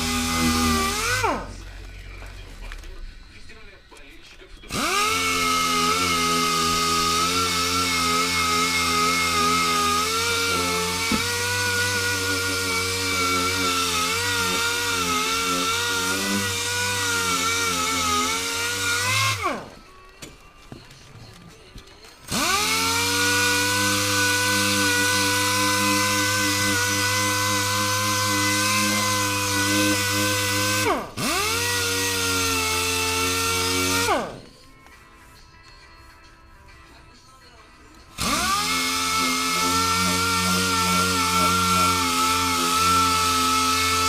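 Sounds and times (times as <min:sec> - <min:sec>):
electric power tool running: 0:00.0 - 0:01.8, 0:04.7 - 0:19.9, 0:22.2 - 0:34.6, 0:38.1 - 0:44.0.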